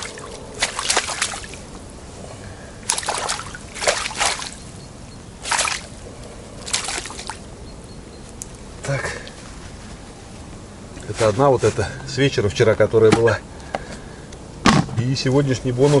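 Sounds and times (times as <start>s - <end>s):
water splashing and sloshing: 0.0s - 11.8s.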